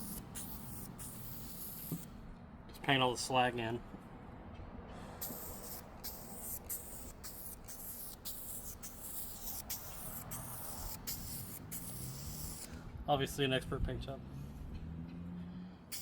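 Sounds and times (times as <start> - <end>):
spray paint hissing in bursts: 0.0 - 2.2, 5.1 - 12.8.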